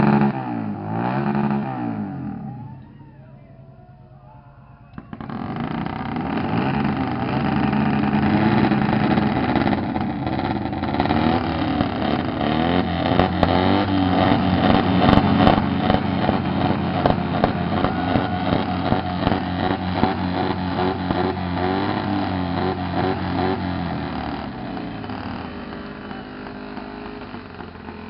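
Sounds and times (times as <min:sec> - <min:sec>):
motorcycles revving loudly: 0:00.0 - 0:28.0.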